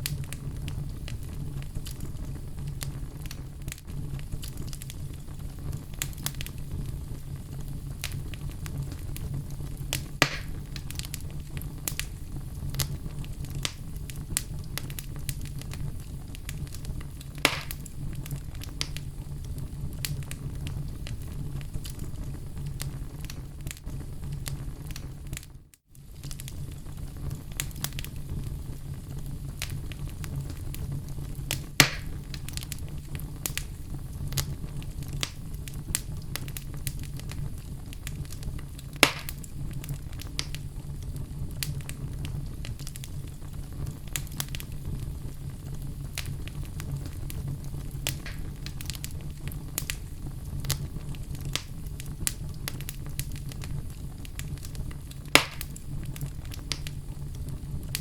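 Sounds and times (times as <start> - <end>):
fire rumbling and crackling: 0.0 - 58.0
sharp pops of burning logs: 8.0 - 19.0, 27.3 - 28.2, 31.5 - 33.7, 38.0 - 40.6, 41.6 - 44.8, 45.9 - 57.0.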